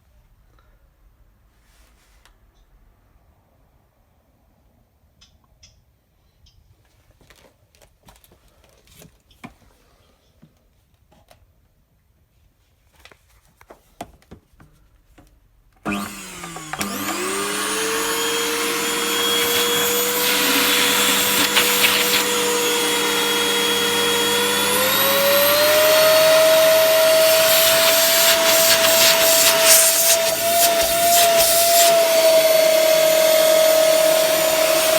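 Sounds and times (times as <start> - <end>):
vacuum cleaner running: 15.8 - 34.9.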